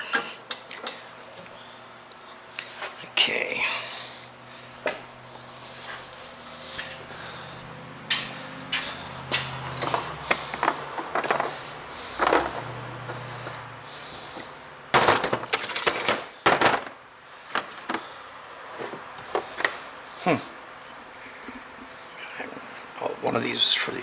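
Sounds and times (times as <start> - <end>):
metal parts knocking and clinking: 15.0 - 17.0
metallic clattering: 15.0 - 17.0.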